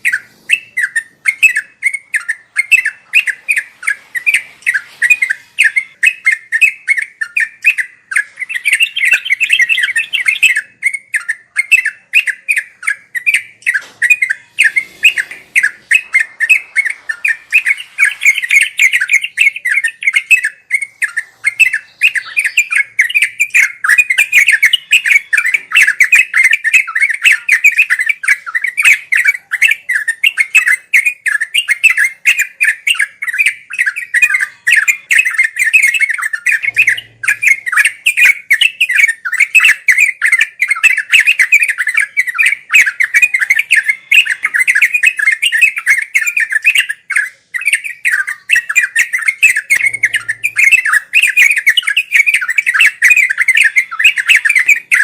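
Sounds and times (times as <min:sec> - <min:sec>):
bulbul chattering song: 0:00.0 - 0:55.0.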